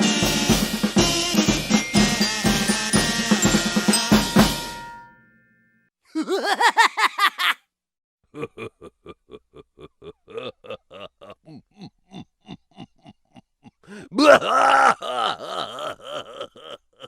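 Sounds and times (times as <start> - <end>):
drum kit beat: 0.0 - 5.1.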